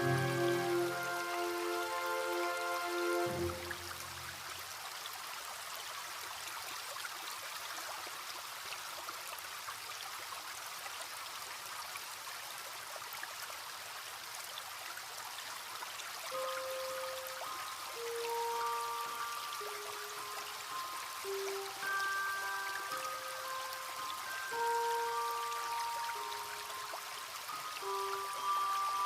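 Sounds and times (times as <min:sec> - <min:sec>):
music box melody: 0:00.0 - 0:03.8, 0:16.4 - 0:29.0
stream trickling and babbling: 0:00.0 - 0:29.0.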